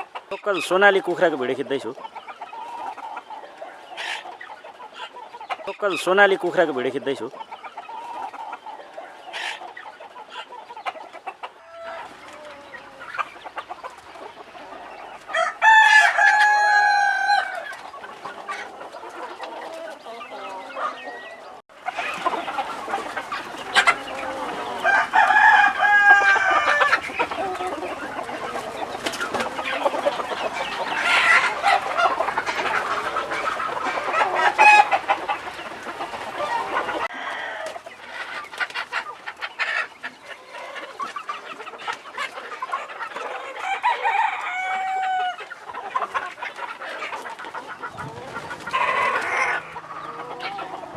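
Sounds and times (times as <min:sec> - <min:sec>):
chickens clucking: 0:00.0 - 0:50.9
rooster crowing: 0:15.3 - 0:17.7, 0:23.9 - 0:28.1, 0:36.4 - 0:37.8, 0:43.6 - 0:45.4.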